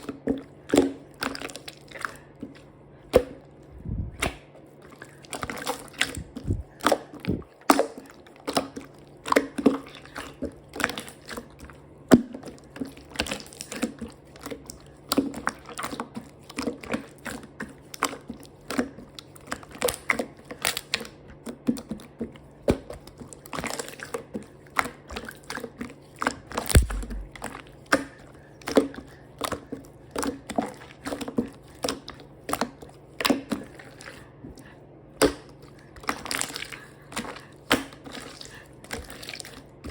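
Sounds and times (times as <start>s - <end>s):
slime squished by hand: 26.2s - 28.1s.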